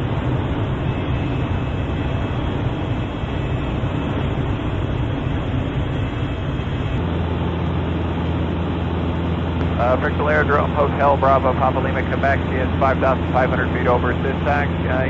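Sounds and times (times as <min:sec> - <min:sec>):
propeller plane engine running: 0:00.0 - 0:15.0.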